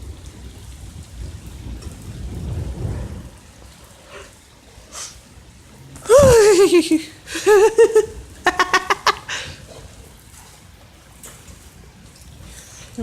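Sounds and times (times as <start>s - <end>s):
warbling voice: 6.0s - 7.1s
person wailing: 6.0s - 7.8s
person giggling: 6.1s - 9.4s.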